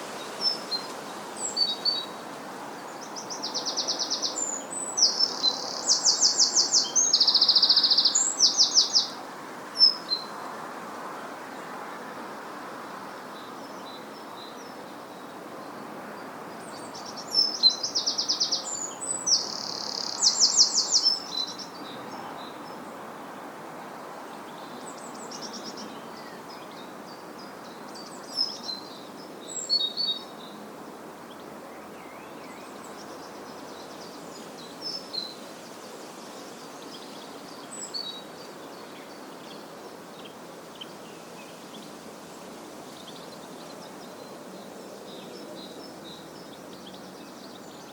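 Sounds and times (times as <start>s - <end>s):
songbirds calling: 0.0s - 10.3s, 13.3s - 23.4s.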